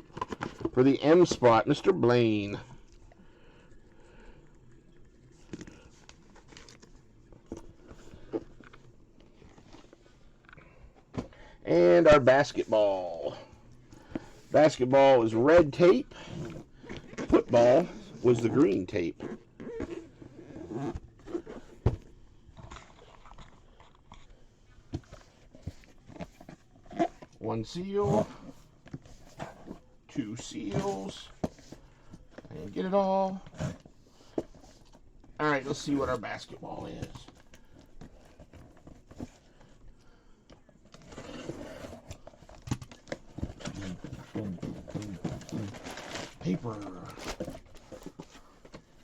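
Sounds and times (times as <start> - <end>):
cardboard box being opened: 40.6 - 49.0
packing paper crinkling: 40.9 - 49.0.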